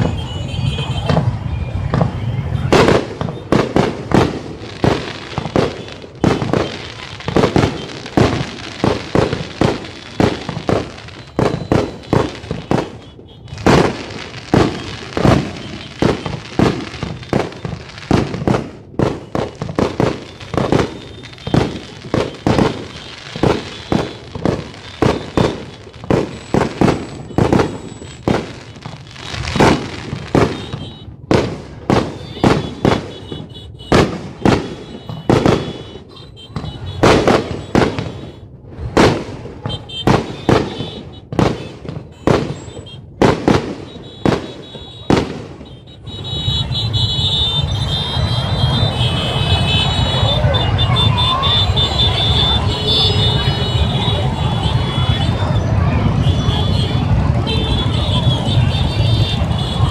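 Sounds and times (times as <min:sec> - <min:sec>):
fireworks bangs and booms: 0:00.0 - 0:59.9.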